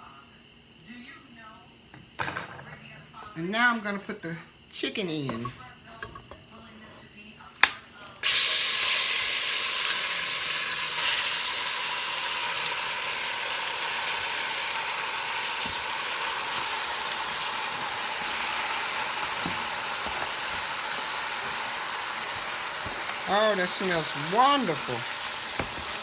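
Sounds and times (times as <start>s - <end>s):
chicken sizzling in hot oil: 8.2s - 26.0s.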